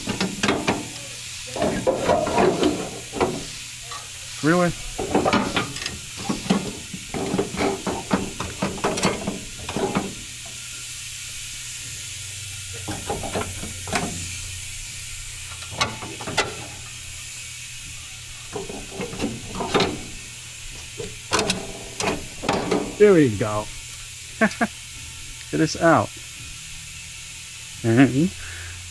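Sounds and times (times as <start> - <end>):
metal parts clattering: 0.0 - 4.1, 4.7 - 10.3, 15.6 - 16.9, 18.5 - 20.2, 20.9 - 23.3.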